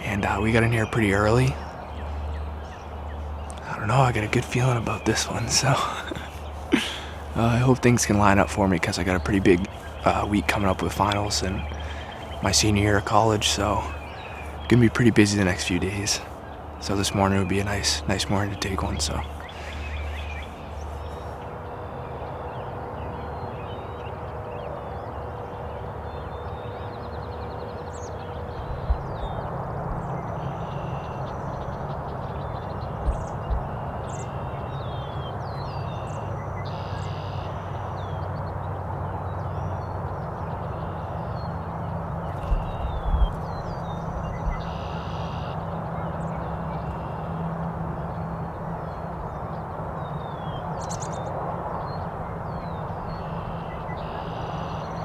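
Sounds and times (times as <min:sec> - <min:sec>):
harsh bird calls: 0:00.0 - 0:55.0
songbirds chirping and warbling: 0:00.0 - 0:55.0
steady rushing background: 0:01.6 - 0:23.5
low thumps: 0:42.4 - 0:43.5.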